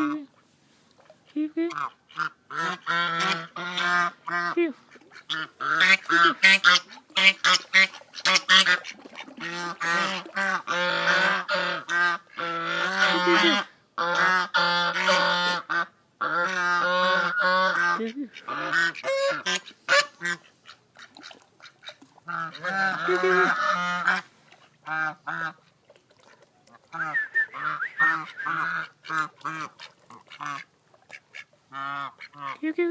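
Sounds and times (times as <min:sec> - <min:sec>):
geese honking: 0:05.2 - 0:20.8, 0:26.7 - 0:32.6.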